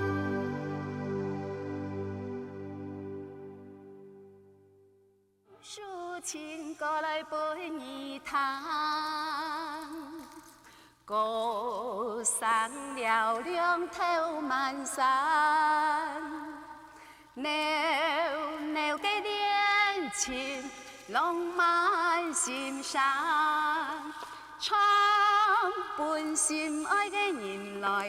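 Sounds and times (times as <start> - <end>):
woman singing with vibrato: 5.6 - 10.2, 11.1 - 16.7, 17.4 - 28.0.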